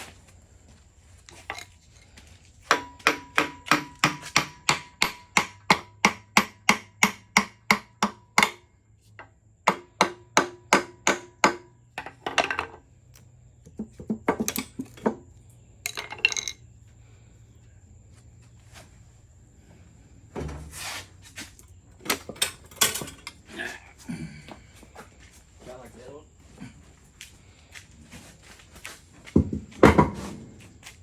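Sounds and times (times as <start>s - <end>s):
hammer striking metal: 2.7s - 8.7s, 9.7s - 12.4s.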